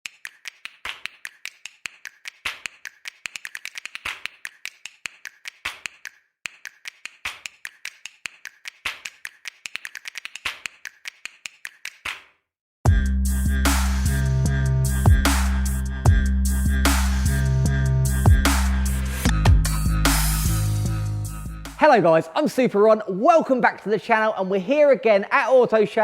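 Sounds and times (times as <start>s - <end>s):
rapid sharp clicks: 0.0s - 12.2s.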